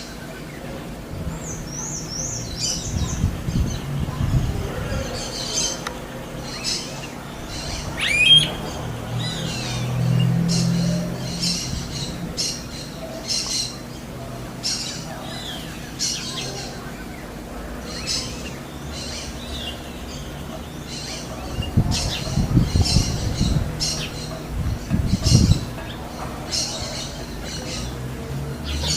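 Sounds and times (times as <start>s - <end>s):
bird short high calls: 7.5s - 9.9s.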